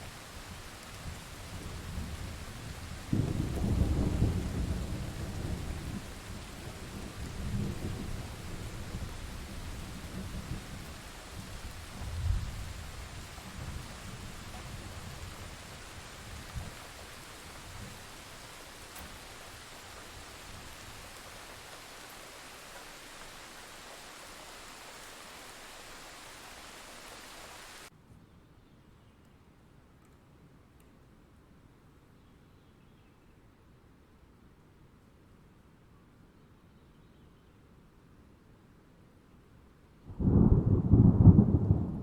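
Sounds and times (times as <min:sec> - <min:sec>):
faint hiss: 0:00.0 - 0:27.9
steady rain: 0:00.0 - 0:27.9, 0:40.0 - 0:42.0
low rumble of thunder: 0:00.4 - 0:21.5, 0:40.1 - 0:42.0.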